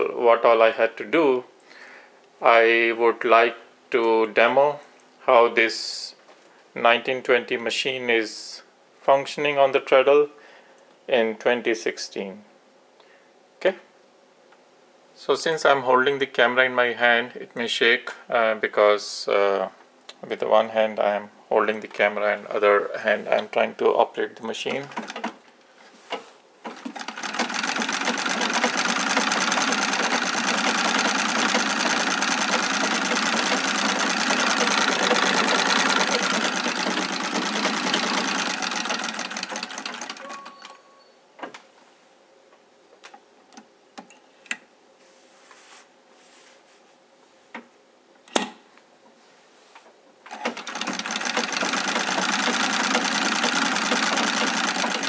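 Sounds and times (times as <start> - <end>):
treadle sewing machine stitching: 24.7 - 25.4, 26.6 - 41.0, 50.3 - 55.0.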